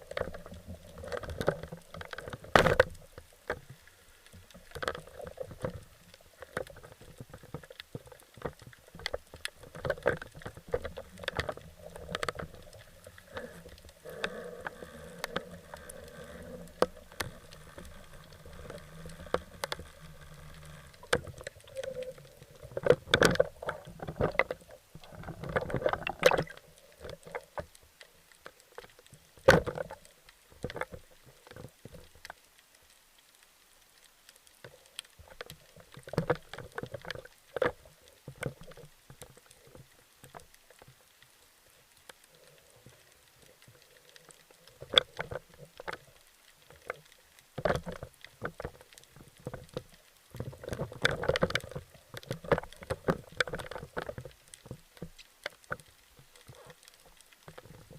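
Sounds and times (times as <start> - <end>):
water sloshing and gurgling: 0.0 - 32.4, 34.4 - 57.9
splashes: 25.2 - 26.7.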